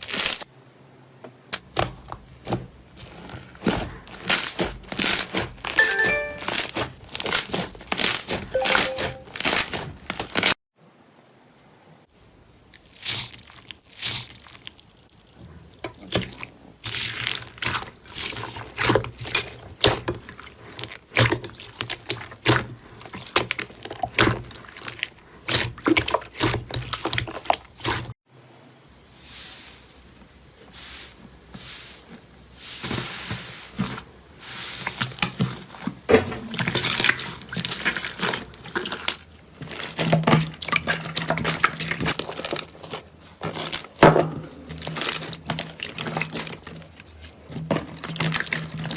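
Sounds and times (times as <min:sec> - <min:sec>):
wet slime squelches: 0:12.8 - 0:28.1, 0:29.2 - 0:48.9.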